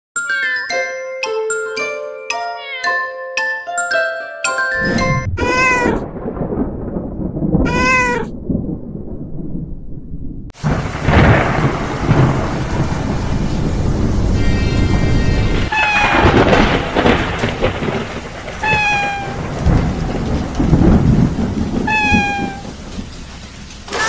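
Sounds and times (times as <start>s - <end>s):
cat meowing: 2.6s - 2.9s, 5.4s - 6.0s, 7.6s - 8.3s, 14.4s - 16.5s, 18.6s - 19.5s, 21.8s - 22.7s
loud thunderclap: 4.8s - 24.0s
rumbling thunder: 4.8s - 24.0s
rain: 5.4s - 9.8s, 10.4s - 24.0s.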